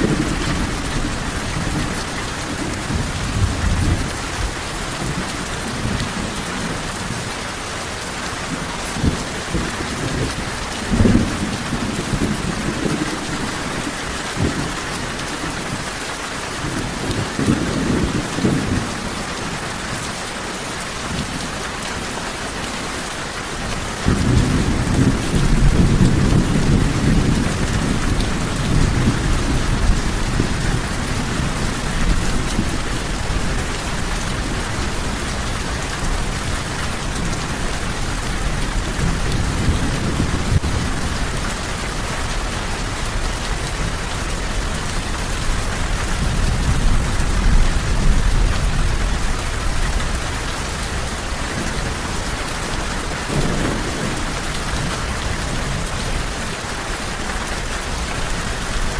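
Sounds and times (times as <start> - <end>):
thunder rumbling: 0.0 - 7.2, 8.9 - 14.8, 24.0 - 56.6
steady rain falling: 0.0 - 58.9.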